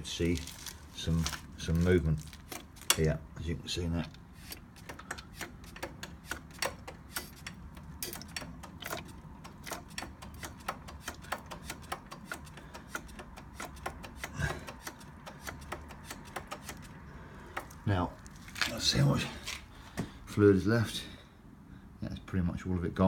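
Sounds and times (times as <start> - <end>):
rapid light clicking: 4.8 - 17.0.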